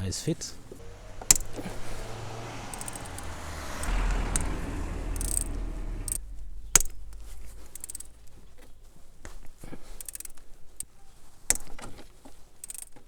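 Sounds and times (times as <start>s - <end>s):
low hum: 0.5s - 10.8s.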